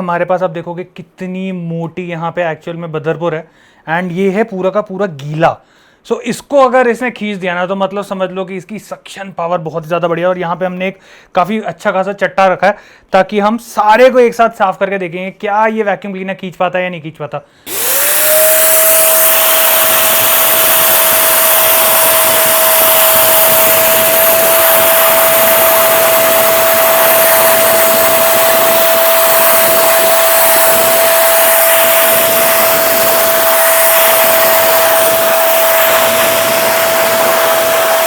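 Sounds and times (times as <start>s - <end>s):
rushing air: 17.7s - 38.0s
vacuum cleaner motor whine: 17.7s - 38.0s.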